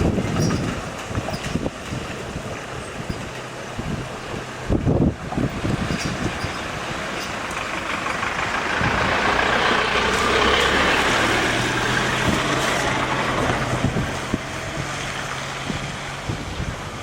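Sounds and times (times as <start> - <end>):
heavy vehicle engine running: 0.0 - 17.0
road noise: 0.0 - 17.0.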